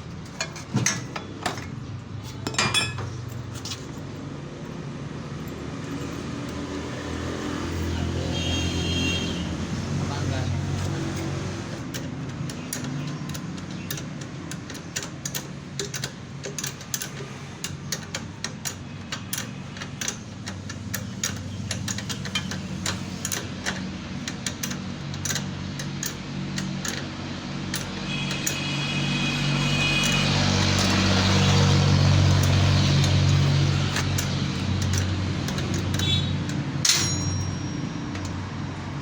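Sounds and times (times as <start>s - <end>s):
sharp clicks and ticks: 11.1s - 28.7s, 30.0s - 39.0s.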